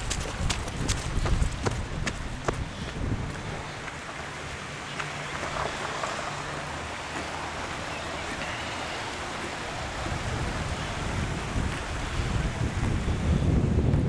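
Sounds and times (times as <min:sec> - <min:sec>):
floodwater rushing: 0:00.0 - 0:14.0.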